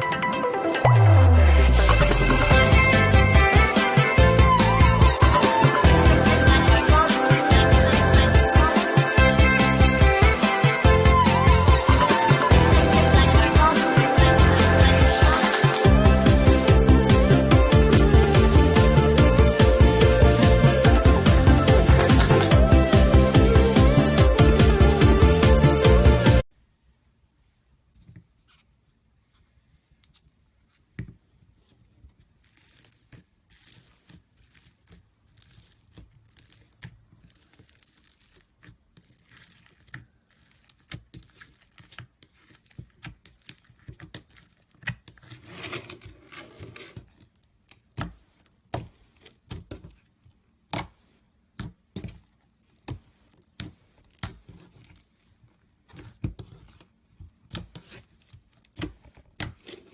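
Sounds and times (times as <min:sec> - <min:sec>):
slime crackling: 0:32.3 - 0:45.4.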